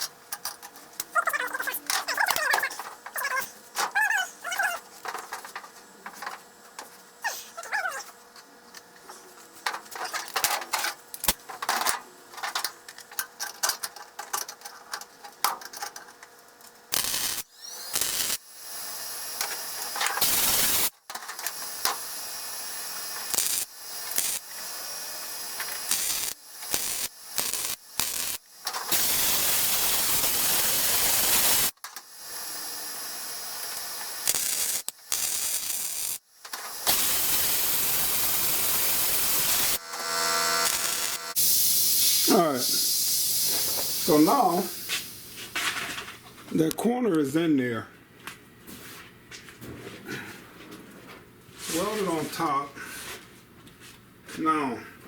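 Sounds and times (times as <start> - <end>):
arc welding crackle: 15.4 - 46.2.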